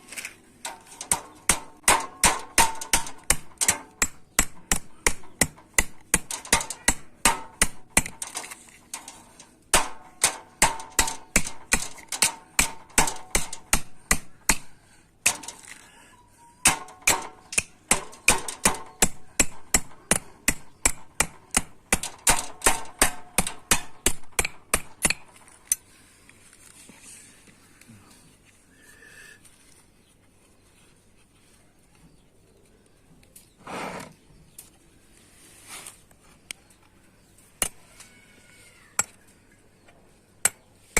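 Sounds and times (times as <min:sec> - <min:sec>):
hammer striking sheet metal: 0:01.0 - 0:08.4, 0:09.7 - 0:14.7, 0:16.6 - 0:25.2.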